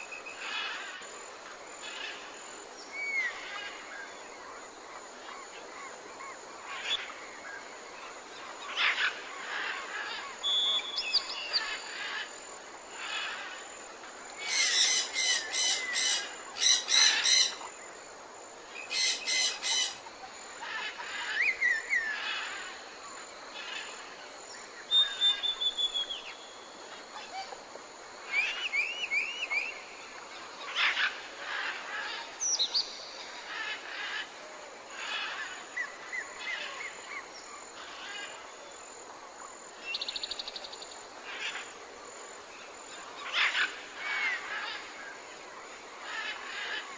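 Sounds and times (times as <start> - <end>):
steady background hiss: 0.0 - 46.9
birds calling: 18.8 - 20.1.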